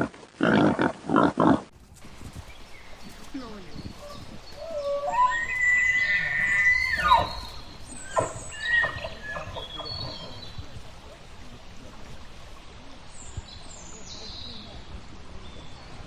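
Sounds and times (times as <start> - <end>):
animal high drawn-out call: 4.0 - 10.3.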